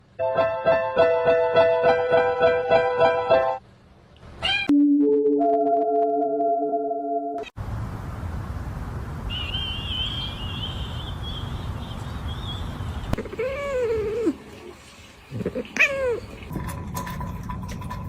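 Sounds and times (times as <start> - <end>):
cat meowing: 4.4 - 4.7.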